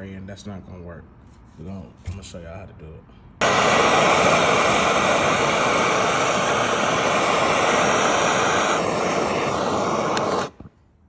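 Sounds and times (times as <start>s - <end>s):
torch flame hissing: 3.4s - 10.7s.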